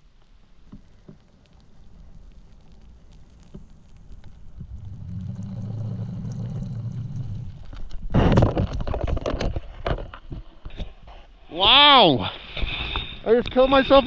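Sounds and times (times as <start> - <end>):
wind rumble on microphone: 1.5 - 10.1.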